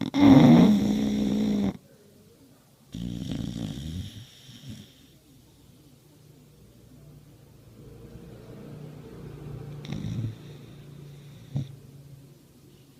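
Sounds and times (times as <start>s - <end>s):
pet snoring: 0.0s - 1.8s, 2.9s - 5.2s, 9.7s - 11.8s.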